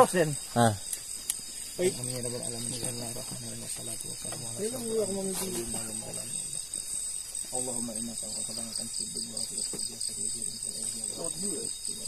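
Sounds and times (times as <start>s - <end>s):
crickets chirping: 0.0s - 12.0s
man murmuring a prayer: 1.8s - 6.6s.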